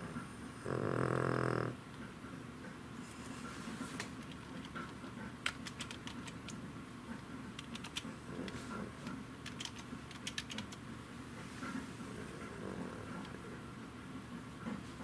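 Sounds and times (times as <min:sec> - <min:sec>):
dog snoring softly: 0:00.0 - 0:01.8, 0:11.8 - 0:13.6
typing on computer keyboard: 0:04.2 - 0:06.6, 0:07.6 - 0:08.1, 0:09.0 - 0:10.8.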